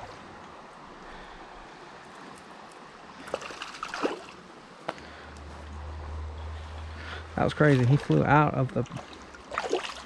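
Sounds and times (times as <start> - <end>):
creek water running: 0.0 - 10.0
sharp knocks or splashes: 3.2 - 4.4, 7.5 - 10.0.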